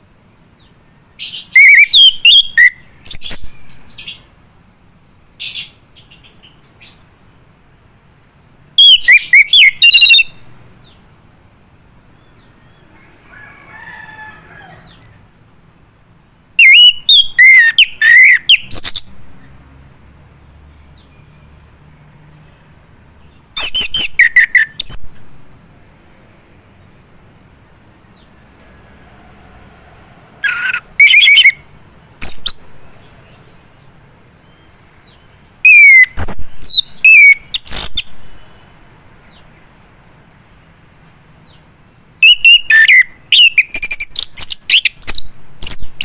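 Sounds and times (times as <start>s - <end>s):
thrush singing whistled notes: 1.2s - 4.3s, 8.8s - 11.0s, 16.6s - 19.6s, 23.4s - 25.4s, 30.4s - 32.7s, 34.4s - 38.6s, 42.2s - 46.0s.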